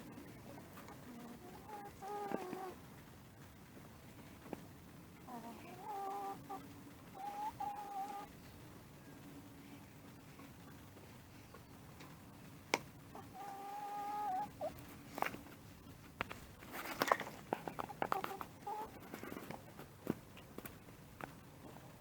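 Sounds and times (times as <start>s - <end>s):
chickens clucking: 0.0s - 20.7s
chicken drawn-out call: 1.1s - 2.8s, 5.3s - 8.3s, 13.1s - 14.8s, 18.0s - 19.4s.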